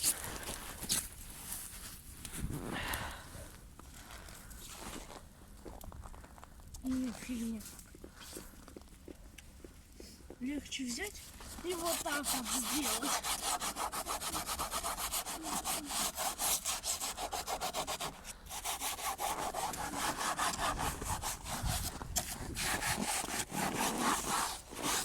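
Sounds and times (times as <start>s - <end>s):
hand saw cutting wood: 11.5s - 25.0s.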